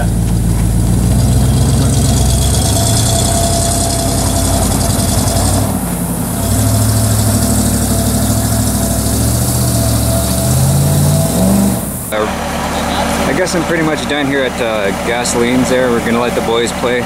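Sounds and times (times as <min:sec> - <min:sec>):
car engine idling: 0:00.0 - 0:17.0.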